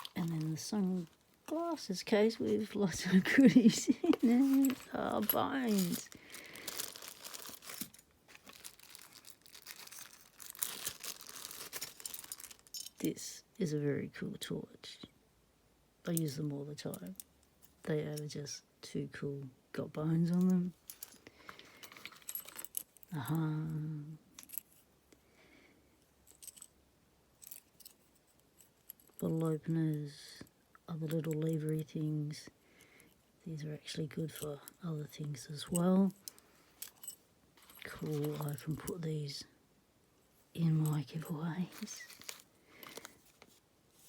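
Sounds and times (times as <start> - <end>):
packaging crinkling and tearing: 0.0 - 1.7, 4.1 - 12.8, 41.7 - 43.6
rustles: 0.0 - 13.1, 20.2 - 23.8, 33.8 - 39.4, 40.2 - 44.0
small metal tools clinking: 0.0 - 13.1, 20.3 - 23.4, 24.3 - 24.9, 26.2 - 26.8, 27.4 - 30.2, 33.8 - 39.4, 40.6 - 43.5.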